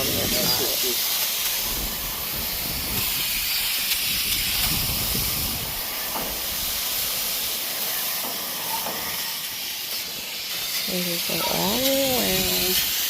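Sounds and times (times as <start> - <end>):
spray bottle hissing: 0.0 - 13.0.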